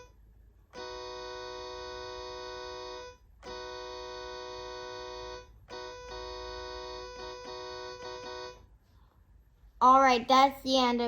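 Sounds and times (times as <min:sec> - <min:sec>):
keyboard chord like train horn: 0:00.8 - 0:08.6.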